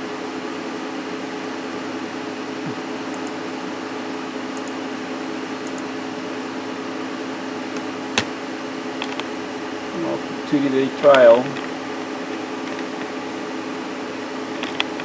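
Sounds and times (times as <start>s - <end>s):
computer fans whirring: 0.0s - 15.0s
sharp click: 3.1s - 3.4s, 4.6s - 4.8s, 5.7s - 5.9s.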